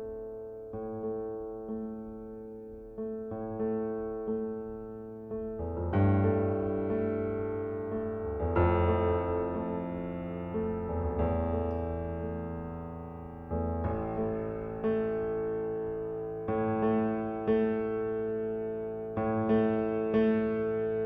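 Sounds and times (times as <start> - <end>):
piano chords: 0.0 - 21.0.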